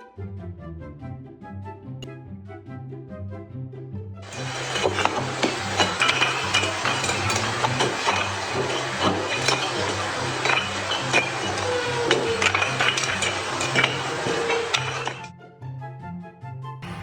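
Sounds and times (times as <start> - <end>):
small clinks and knocks: 4.3 - 15.3.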